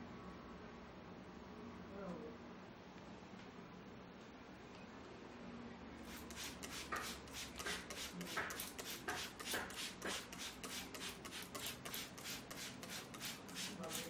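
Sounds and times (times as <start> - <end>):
hands rubbing skin and hair: 6.1 - 14.0.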